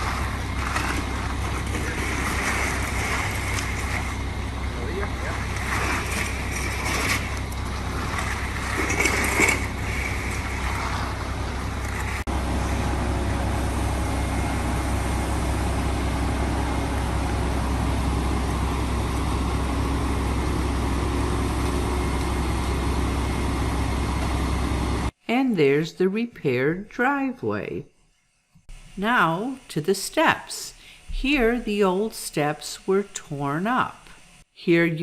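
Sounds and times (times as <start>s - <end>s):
heavy vehicle engine running: 0.0s - 25.2s.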